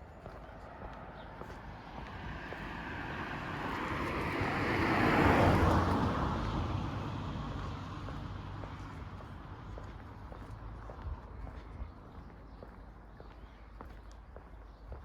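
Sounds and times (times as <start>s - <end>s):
vehicle passing by: 1.6s - 11.5s.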